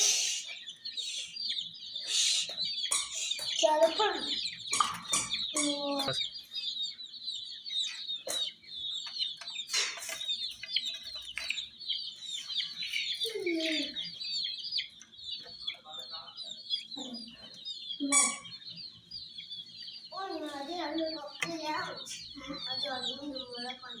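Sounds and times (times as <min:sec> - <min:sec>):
baby chicks peeping: 0:00.0 - 0:24.0
lower louder chick calls: 0:00.0 - 0:24.0.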